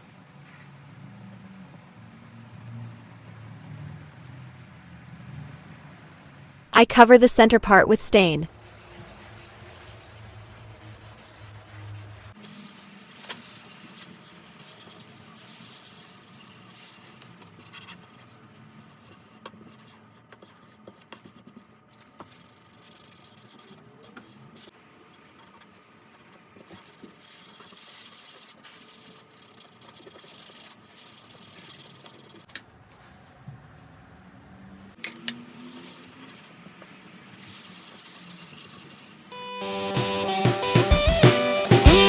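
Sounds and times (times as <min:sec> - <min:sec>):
rubbing strokes on wood: 0:08.5 - 0:24.7, 0:25.6 - 0:33.2, 0:35.4 - 0:39.4.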